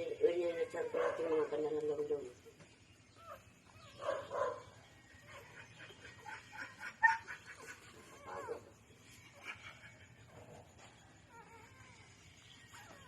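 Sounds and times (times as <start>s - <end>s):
puppies whimpering and squeaking: 3.0s - 13.0s.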